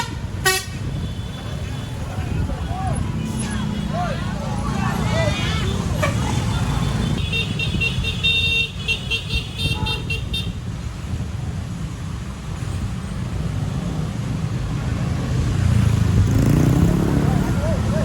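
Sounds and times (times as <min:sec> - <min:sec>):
bus horn playing high notes: 0:00.0 - 0:02.0
bus engine rumble: 0:00.0 - 0:18.0
road traffic: 0:00.0 - 0:18.0.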